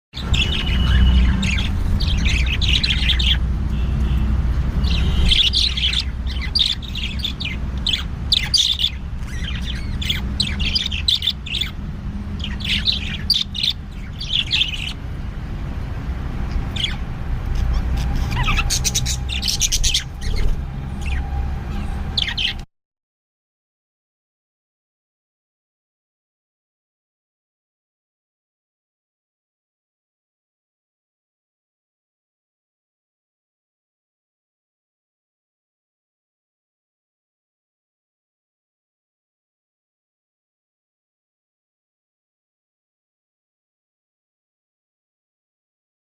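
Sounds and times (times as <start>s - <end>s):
budgerigars chirping: 0.2s - 15.0s, 16.4s - 22.6s.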